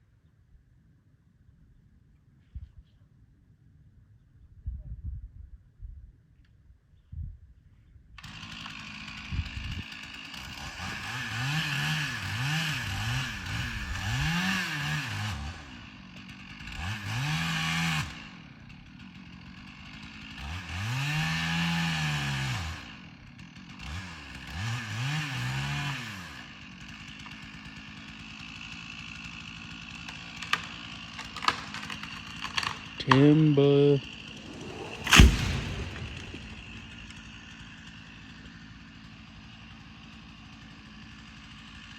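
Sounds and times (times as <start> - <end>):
chainsaw revving and cutting: 8.2 - 41.9
sharp knocks: 34.3 - 37.1.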